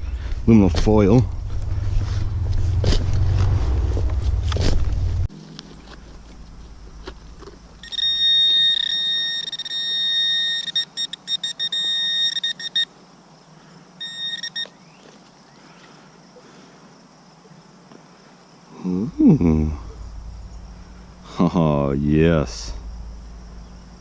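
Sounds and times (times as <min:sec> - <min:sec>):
metal detector tone: 0:07.8 - 0:12.9, 0:14.0 - 0:14.8.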